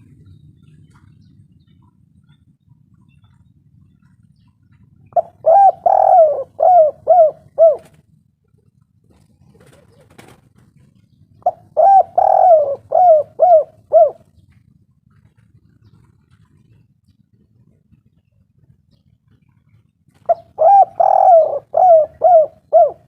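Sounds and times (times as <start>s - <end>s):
dove cooing: 5.1s - 8.1s, 9.1s - 16.8s, 20.2s - 23.0s.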